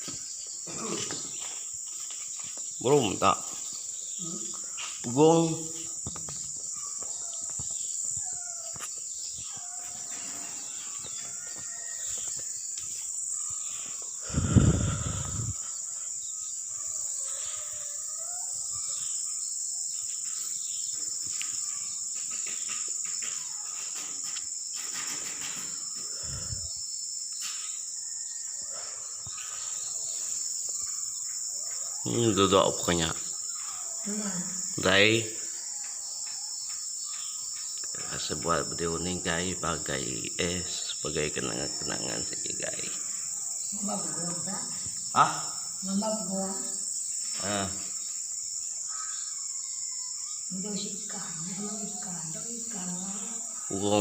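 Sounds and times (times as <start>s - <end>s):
insect chorus: 0.0s - 54.0s.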